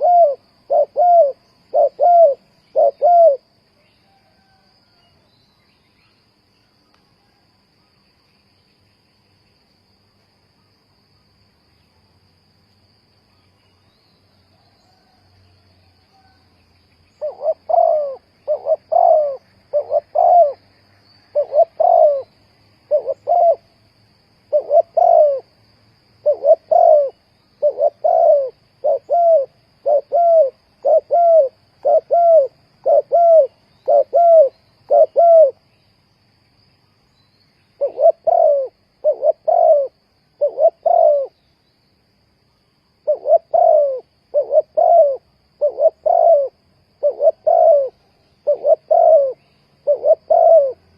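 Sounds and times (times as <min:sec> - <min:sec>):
dove cooing: 0:00.0 - 0:05.0, 0:17.1 - 0:20.6, 0:21.3 - 0:23.8, 0:24.4 - 0:25.6, 0:26.2 - 0:35.6, 0:37.8 - 0:41.4, 0:43.0 - 0:50.9
cricket trilling: 0:00.0 - 0:50.9.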